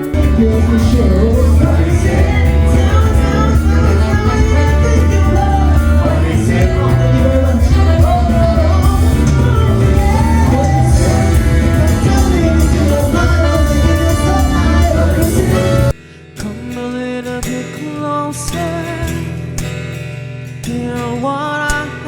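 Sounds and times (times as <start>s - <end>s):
full band backing: 0.0s - 16.6s
person singing: 0.0s - 19.3s, 20.7s - 22.0s.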